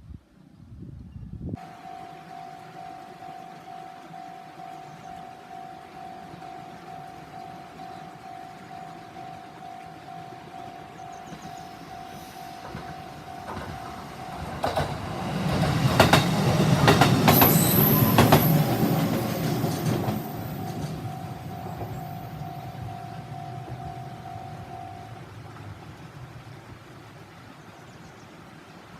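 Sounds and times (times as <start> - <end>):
level crossing alarm ringing: 1.6 - 25.2
train clattering over rail joints: 4.6 - 24.8.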